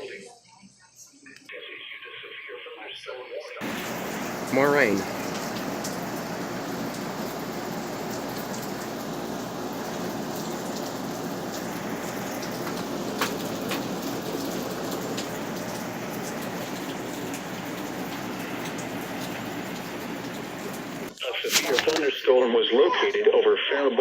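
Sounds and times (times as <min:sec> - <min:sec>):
rain falling steadily: 0:03.6 - 0:22.0.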